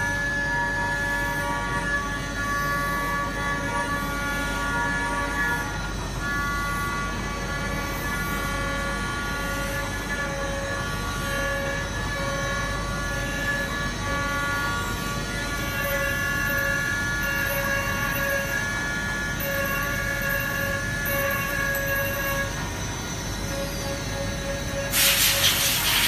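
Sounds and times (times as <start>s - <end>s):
machine cutting steel: 6.4s - 26.0s.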